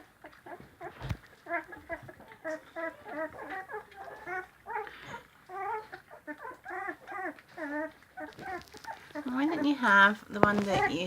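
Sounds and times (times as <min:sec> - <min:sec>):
puppies whimpering and squealing: 0:00.0 - 0:11.0.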